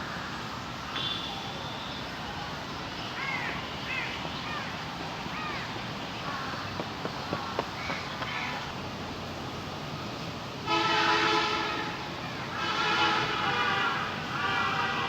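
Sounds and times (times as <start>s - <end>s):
open-air ambient hiss: 0.0s - 15.0s
birds cawing: 3.2s - 8.6s.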